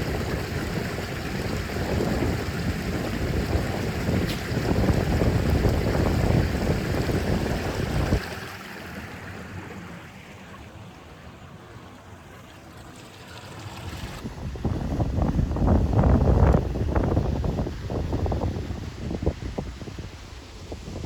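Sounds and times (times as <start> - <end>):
wind rumbling on microphone: 0.0 - 8.4, 13.9 - 21.0
rushing water: 0.0 - 21.0.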